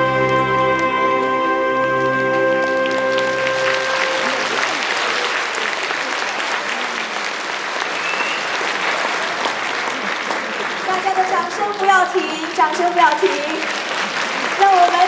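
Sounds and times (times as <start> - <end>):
held trumpet note: 0.0 - 4.8
audience applauding: 1.8 - 15.0.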